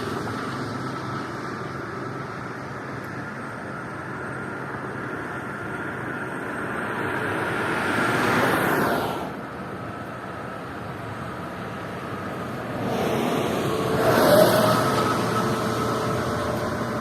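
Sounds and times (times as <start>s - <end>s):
motorway traffic noise: 0.0s - 17.0s
vehicle passing close by: 12.3s - 17.0s.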